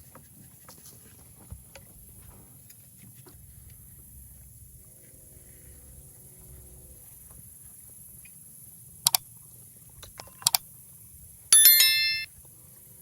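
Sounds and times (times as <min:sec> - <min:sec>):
double clicks: 0:10.4 - 0:10.6
metallic bell ringing: 0:11.6 - 0:12.3.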